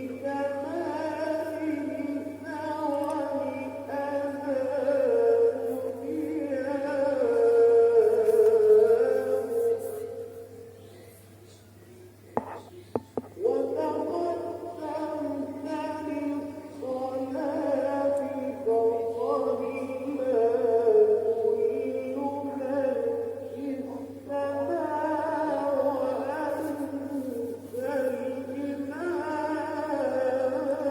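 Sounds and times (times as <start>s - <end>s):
faint low hum: 0.0s - 30.9s.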